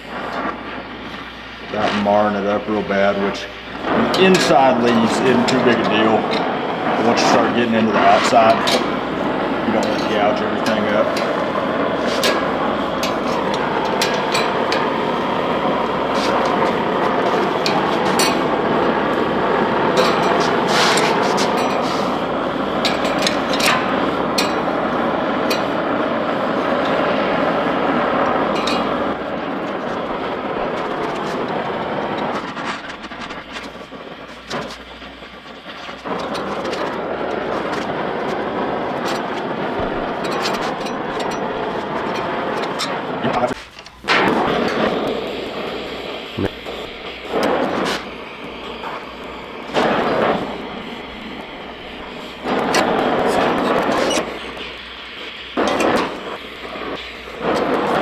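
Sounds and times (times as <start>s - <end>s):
gas flame roaring: 0.0s - 58.0s
loud rushing noise: 0.0s - 58.0s.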